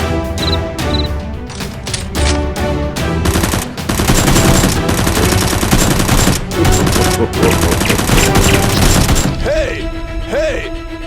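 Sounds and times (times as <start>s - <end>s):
background music: 0.0s - 11.0s
automatic gunfire bursts: 3.2s - 9.4s.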